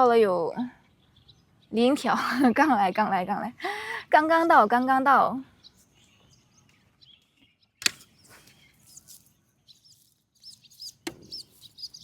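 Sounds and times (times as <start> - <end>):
small birds chirping: 0.0 - 12.0
sharp knocks: 11.0 - 11.4.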